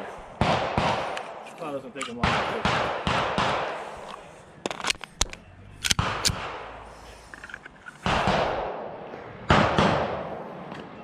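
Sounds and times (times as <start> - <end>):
gunshots with echo: 0.0 - 3.9, 5.9 - 6.8, 8.0 - 10.7.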